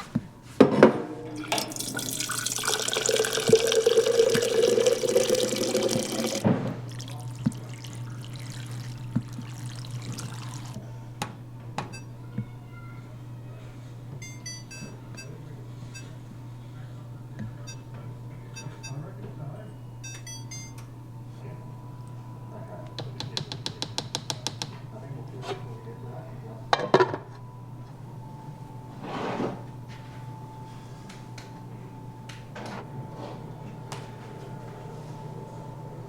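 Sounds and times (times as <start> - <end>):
steady low hum: 0.0 - 12.4, 13.1 - 23.3, 24.8 - 36.0
tap water running into sink: 1.4 - 10.8.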